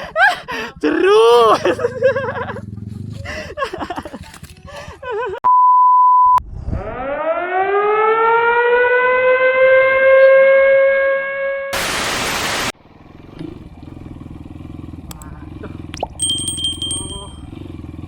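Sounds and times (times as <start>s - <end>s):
high beep: 5.5s - 6.4s
siren wailing: 6.8s - 11.7s
loud static hiss: 11.8s - 12.7s.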